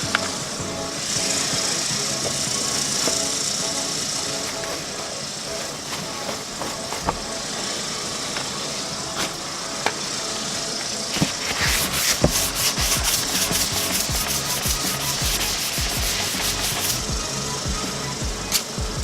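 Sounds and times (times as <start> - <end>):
steady hiss: 0.0 - 18.8
sandpaper rubbing on plastic: 11.2 - 17.1.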